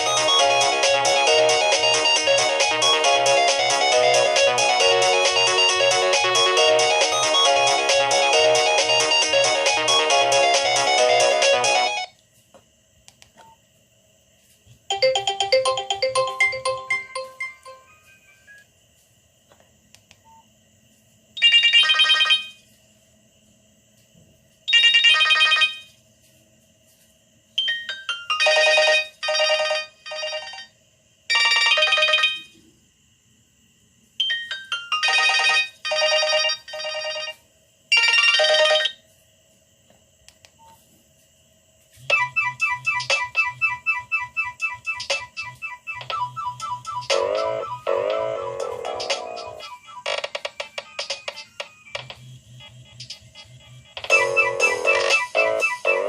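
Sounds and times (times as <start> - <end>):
mobile phone ringtone: 0.0 - 12.1, 14.9 - 18.6, 21.4 - 22.6, 24.7 - 26.0, 27.6 - 32.6, 34.2 - 39.0, 42.1 - 52.2, 52.8 - 56.0.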